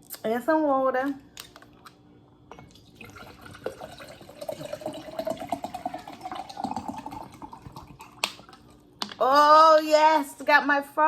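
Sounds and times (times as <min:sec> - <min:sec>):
water pouring into a mug: 0:02.7 - 0:08.8.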